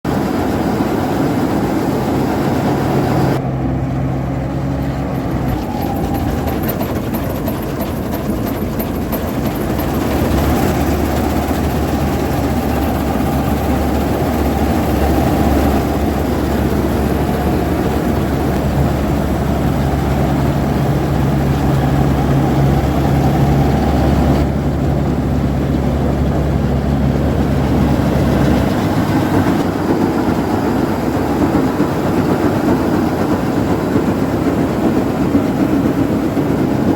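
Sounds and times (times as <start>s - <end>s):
combine harvester engine drone: 0.1s - 36.9s
mechanical rattle: 4.8s - 18.6s.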